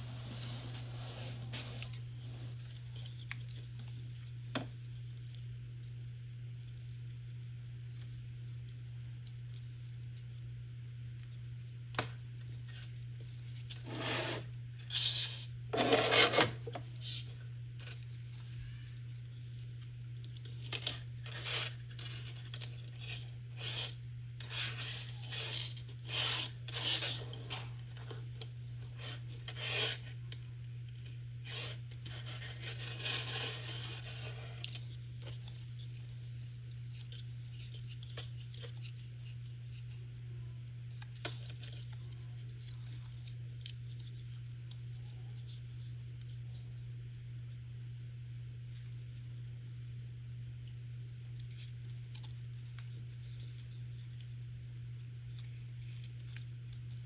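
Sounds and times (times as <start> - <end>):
cardboard rubbing and scraping: 0.0 - 3.6, 13.7 - 17.3
steady low hum: 0.0 - 57.0.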